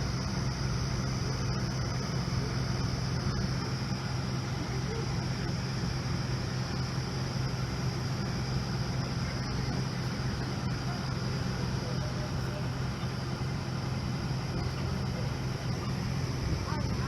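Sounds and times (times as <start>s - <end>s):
diesel engine idling: 0.0s - 17.0s.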